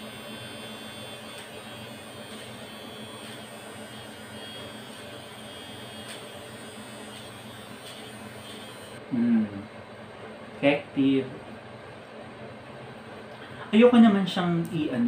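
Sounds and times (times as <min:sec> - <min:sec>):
nose hair trimmer humming: 0:00.0 - 0:09.6
faint ticks of blade cutting hairs: 0:02.2 - 0:03.6, 0:04.8 - 0:09.0.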